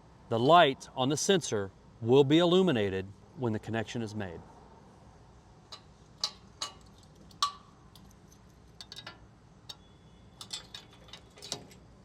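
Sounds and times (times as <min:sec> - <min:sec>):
metal parts clicking and clinking: 0:05.7 - 0:11.9.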